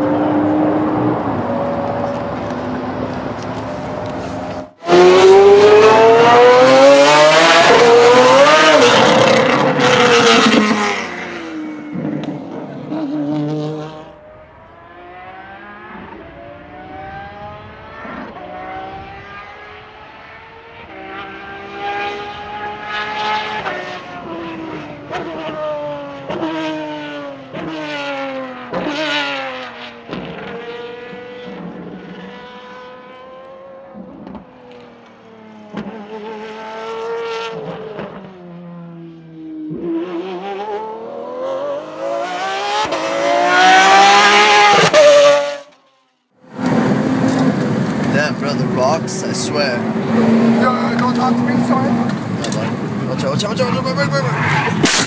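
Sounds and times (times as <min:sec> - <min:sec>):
race car engine accelerating: 0:00.0 - 0:45.7, 0:46.5 - 0:55.0.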